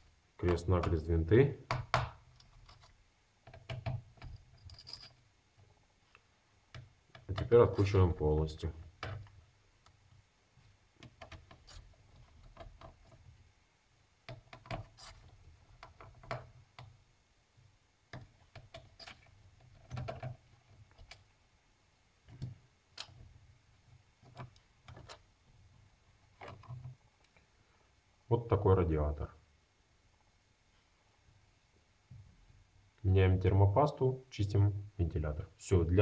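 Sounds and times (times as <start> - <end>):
handling of small parts: 4.2 - 5.3.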